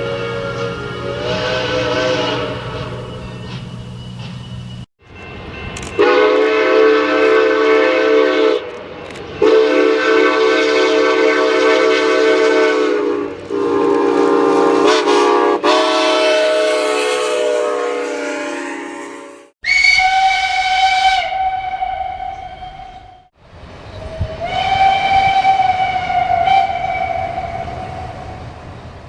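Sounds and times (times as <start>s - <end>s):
train whistle blasts: 0.0s - 4.9s, 6.0s - 23.4s, 24.0s - 28.4s.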